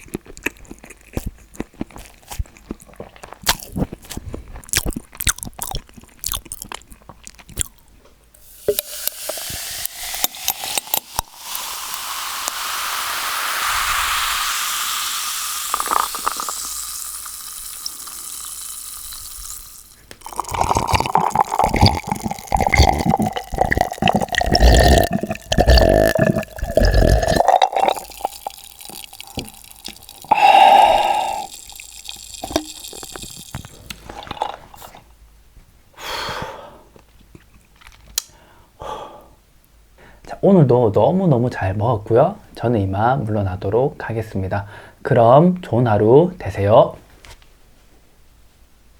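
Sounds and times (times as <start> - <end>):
carbonated drink fizzing: 8.4 - 35.0
loud gulps: 15.6 - 17.0, 20.1 - 35.1
throat sound: 20.2 - 28.5, 29.3 - 31.8.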